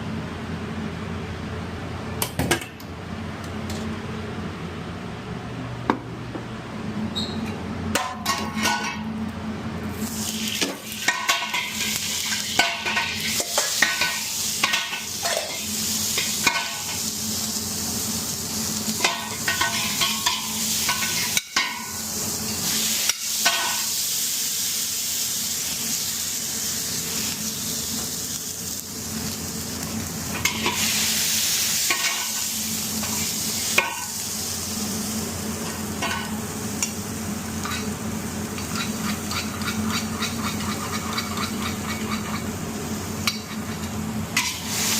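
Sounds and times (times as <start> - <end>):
food sizzling in a pan: 9.9 - 44.9
metal utensil scraping a pan: 38.6 - 42.5.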